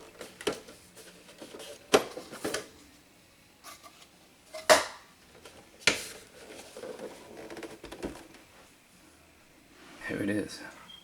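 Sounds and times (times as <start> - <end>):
plastic rubbing and rattling: 5.4 - 8.5.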